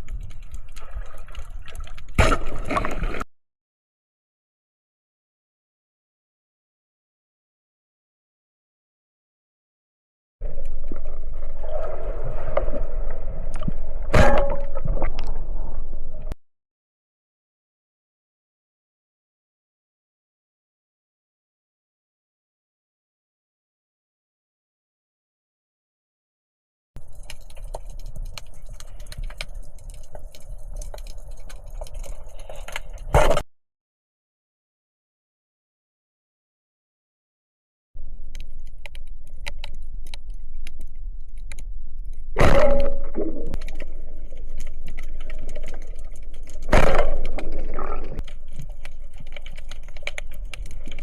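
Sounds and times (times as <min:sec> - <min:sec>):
scattered underwater clicks: 0:00.0 - 0:03.2, 0:27.0 - 0:33.4, 0:38.0 - 0:51.0
low underwater rumble: 0:10.4 - 0:16.4, 0:38.0 - 0:51.0
water gurgling: 0:42.3 - 0:51.0.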